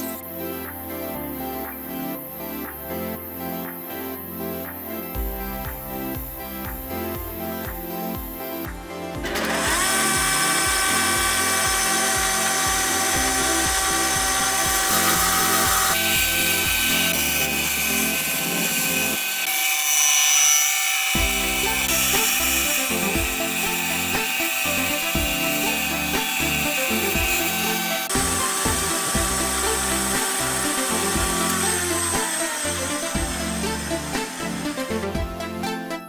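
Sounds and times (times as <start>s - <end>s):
background music with beat: 0.0s - 19.4s, 21.1s - 36.0s
power tool motor whining: 9.2s - 35.3s.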